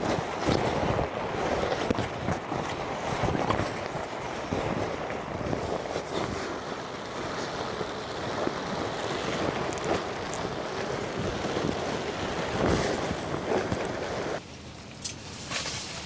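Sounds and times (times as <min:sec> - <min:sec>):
wind on microphone: 0:00.0 - 0:14.4
steady rain falling: 0:00.0 - 0:16.0
raindrops ticking: 0:06.5 - 0:15.3.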